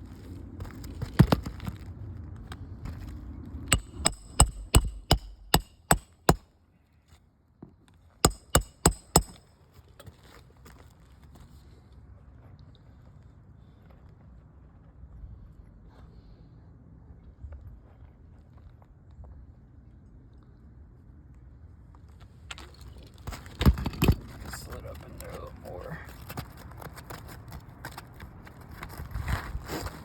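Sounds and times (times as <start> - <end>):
hammer driving nails into shingles: 3.7 - 6.4, 8.2 - 9.4.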